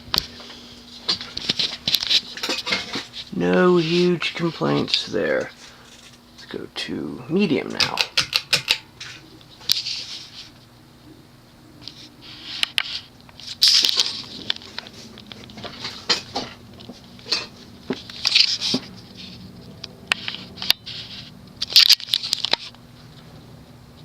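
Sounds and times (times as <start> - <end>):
ceiling fan motor humming: 0.0 - 24.0
scratchy rustles and clicks: 11.8 - 23.4.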